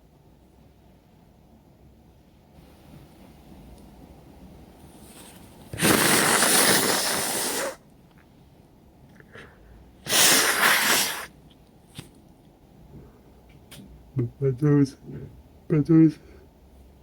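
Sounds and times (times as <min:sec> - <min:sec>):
person blowing nose: 0:05.7 - 0:07.8, 0:09.3 - 0:11.3.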